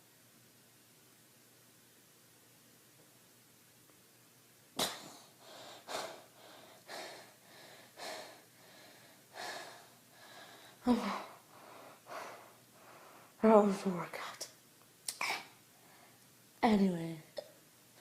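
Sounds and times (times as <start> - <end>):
girl breathing hard: 5.0 - 13.4
girl gasping: 5.0 - 13.4.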